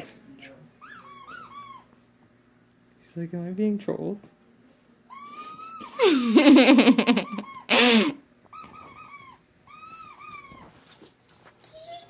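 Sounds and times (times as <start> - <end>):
squeaky dog toy squeaks: 0.8 - 1.9, 8.5 - 10.7.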